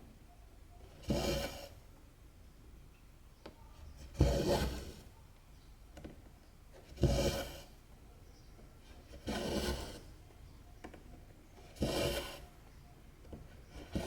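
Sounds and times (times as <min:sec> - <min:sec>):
thread rasping through fabric: 0:11.7 - 0:12.4.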